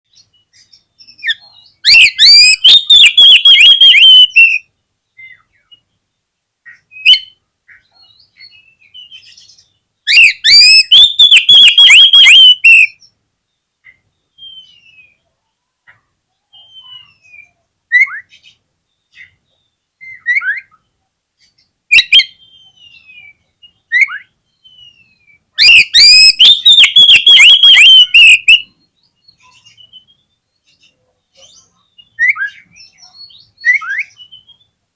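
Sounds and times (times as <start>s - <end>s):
soft bird whistles and chirps: 0.1s - 5.8s, 6.7s - 13.1s, 13.8s - 15.2s, 16.5s - 34.7s
songbird singing fast runs: 0.1s - 6.0s, 8.2s - 15.2s, 21.9s - 34.8s.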